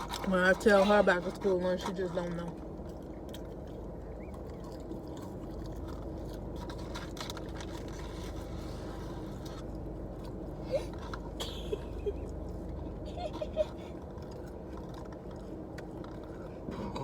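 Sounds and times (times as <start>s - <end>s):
car interior hum: 0.0s - 17.0s
chewing: 0.0s - 17.0s.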